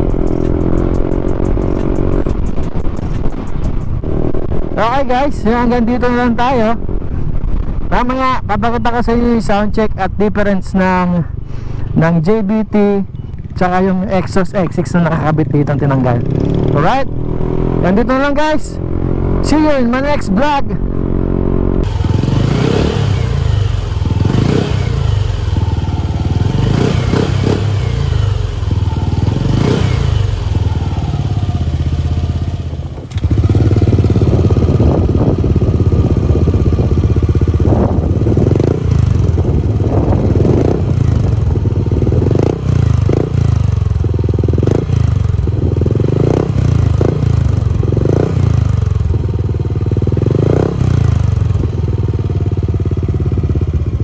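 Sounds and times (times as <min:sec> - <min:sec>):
scooter engine revving: 0:21.3 - 0:54.0.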